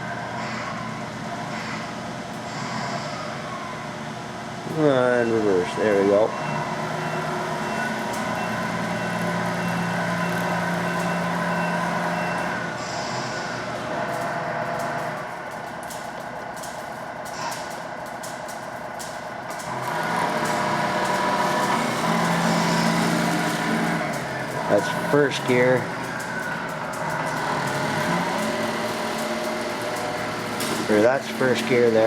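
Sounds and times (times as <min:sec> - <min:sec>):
radio-controlled truck motor drone: 0:05.5 - 0:14.9, 0:19.8 - 0:32.0
repeating high reversing beep: 0:05.8 - 0:13.6, 0:20.5 - 0:31.8.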